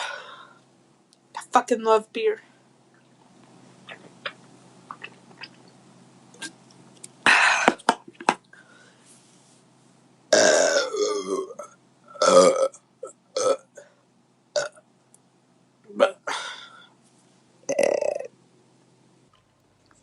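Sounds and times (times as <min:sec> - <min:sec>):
woman belching: 0:10.3 - 0:13.7, 0:14.6 - 0:14.8, 0:15.9 - 0:16.4, 0:17.7 - 0:18.3.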